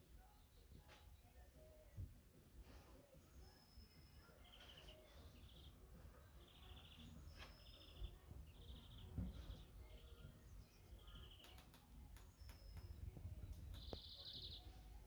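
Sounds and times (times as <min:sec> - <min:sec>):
songbirds singing: 0:00.0 - 0:15.0
sharp clicks: 0:11.4 - 0:14.0.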